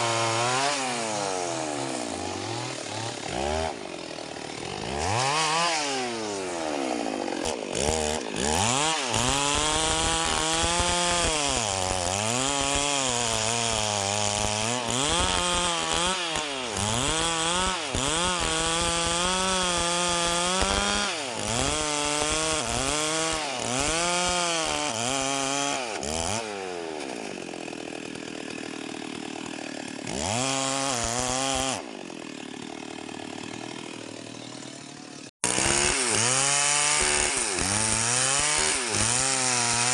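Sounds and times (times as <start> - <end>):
chainsaw cutting wood: 0.0 - 39.9
chainsaw idling: 0.0 - 39.9.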